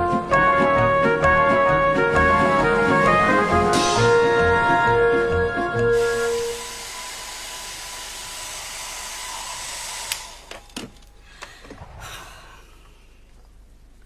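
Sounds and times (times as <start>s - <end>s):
hair dryer blowing: 2.4s - 4.8s, 5.8s - 10.5s
hair dryer switch click: 10.0s - 10.4s.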